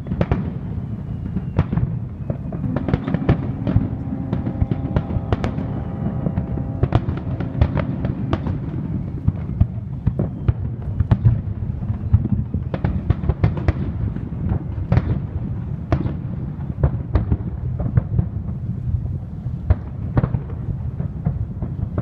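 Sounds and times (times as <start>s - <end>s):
fireworks sharp bangs: 0.0s - 18.4s
low rumble of bursts: 0.6s - 12.3s.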